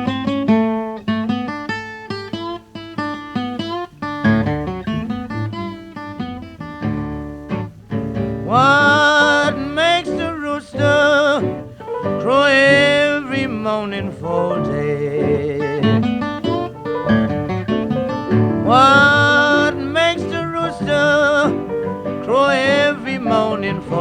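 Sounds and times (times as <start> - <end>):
acoustic guitar picking: 0.0 - 24.0
man singing: 8.4 - 24.0.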